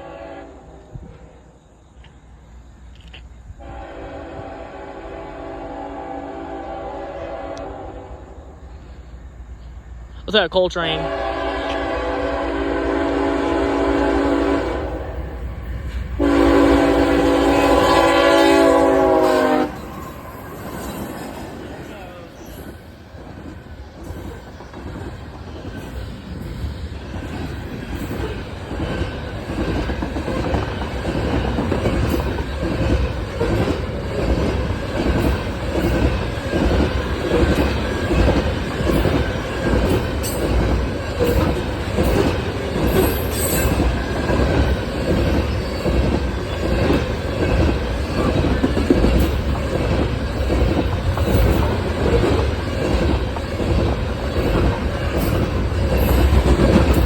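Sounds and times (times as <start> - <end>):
train wheels clattering: 13.4 - 57.0
high wheel squeal: 19.7 - 28.3, 42.9 - 48.3.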